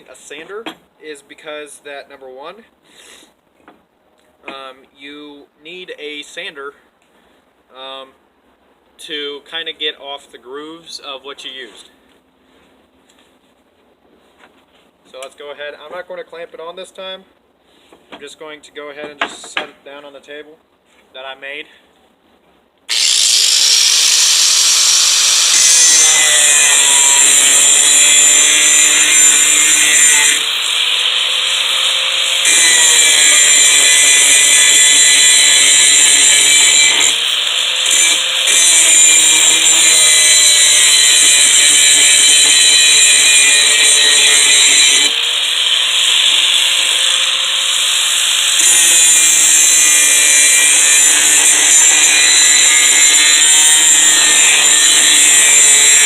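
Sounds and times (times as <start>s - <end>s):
angle grinder motor whine: 22.9s - 27.9s.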